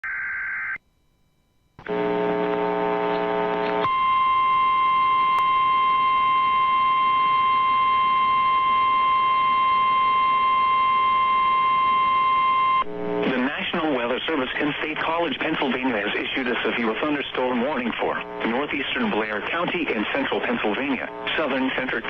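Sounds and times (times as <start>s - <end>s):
harsh low buzz: 1.8s - 3.8s, 12.8s - 13.6s, 17.0s - 22.0s.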